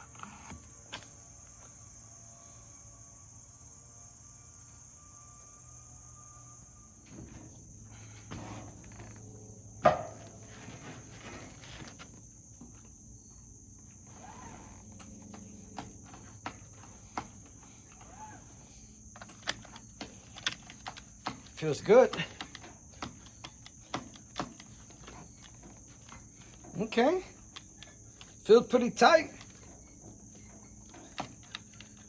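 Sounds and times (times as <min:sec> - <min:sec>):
crickets chirring: 0:00.0 - 0:32.0
handling knocks and clicks: 0:19.1 - 0:32.0.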